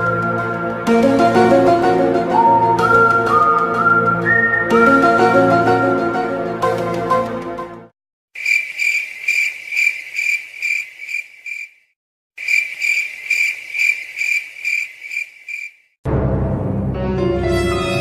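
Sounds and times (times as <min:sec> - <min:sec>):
music: 0:00.0 - 0:07.9, 0:16.1 - 0:18.0
crickets chirping: 0:08.4 - 0:15.9.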